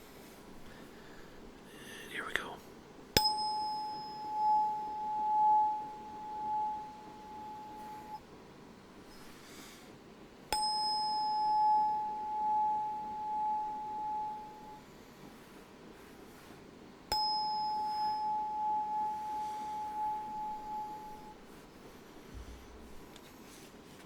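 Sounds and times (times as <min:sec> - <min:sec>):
tuning fork ringing: 0:03.2 - 0:08.3, 0:10.4 - 0:15.0, 0:17.0 - 0:23.2.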